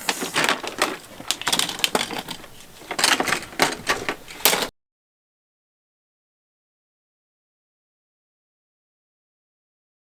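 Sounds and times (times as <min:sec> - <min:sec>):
plastic toy cars clattering: 0:00.0 - 0:04.7.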